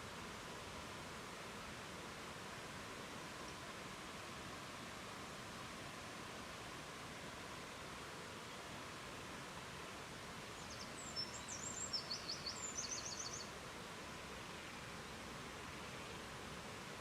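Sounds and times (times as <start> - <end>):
songbird chirping and trilling: 10.7 - 13.5.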